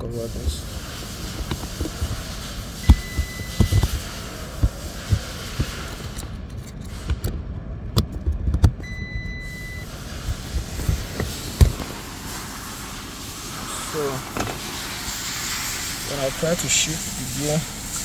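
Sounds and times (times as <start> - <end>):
electronic beep: 2.8 - 3.9, 8.8 - 9.9
plastic trim clicks and knocks: 7.1 - 8.9.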